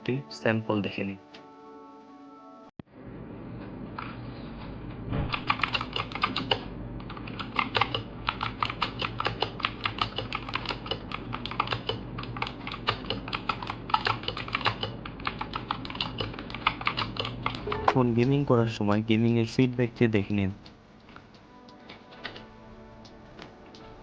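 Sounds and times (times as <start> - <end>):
clicky mechanical keyboard typing: 5.3 - 18.1.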